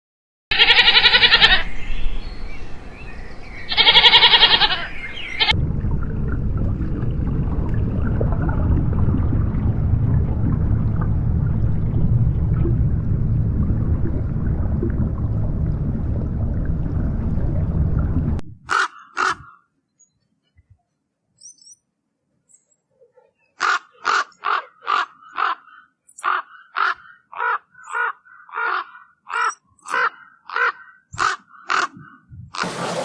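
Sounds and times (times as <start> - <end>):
drawn-out animal calls: 0.5 - 1.7, 3.5 - 5.6
steady low rumble: 5.3 - 18.6.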